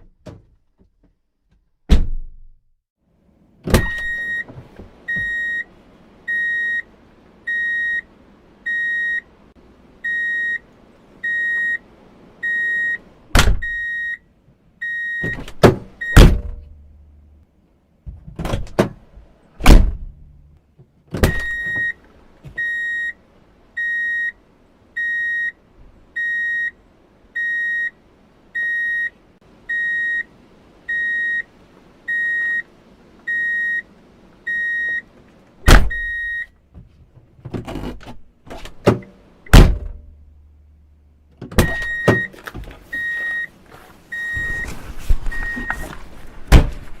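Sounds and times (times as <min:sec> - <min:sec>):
car doors opening and shutting: 0:00.0 - 0:02.6, 0:03.5 - 0:05.7, 0:12.4 - 0:16.8, 0:18.0 - 0:23.2, 0:32.1 - 0:40.2, 0:41.3 - 0:47.0
door-open warning chime beeping: 0:03.8 - 0:04.5, 0:05.1 - 0:05.7, 0:12.4 - 0:13.0, 0:13.6 - 0:14.2, 0:14.8 - 0:15.4, 0:21.4 - 0:22.0, 0:22.6 - 0:23.2, 0:33.3 - 0:33.9, 0:35.9 - 0:36.5, 0:41.6 - 0:42.3, 0:42.9 - 0:43.5, 0:44.1 - 0:45.8.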